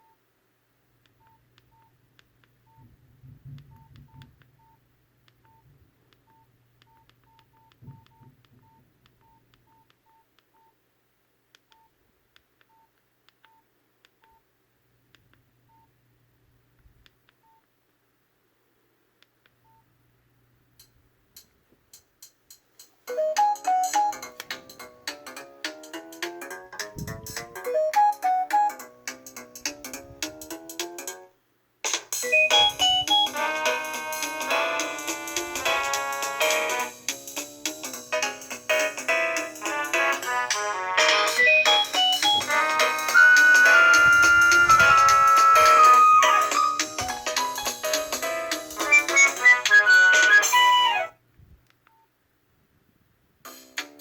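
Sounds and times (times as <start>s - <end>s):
melodic phone ringtone: 23.1s - 24.3s, 27.0s - 28.8s, 32.2s - 36.9s, 41.1s - 51.0s
keypad beeps: 32.2s - 33.4s, 41.3s - 42.5s, 43.2s - 46.8s.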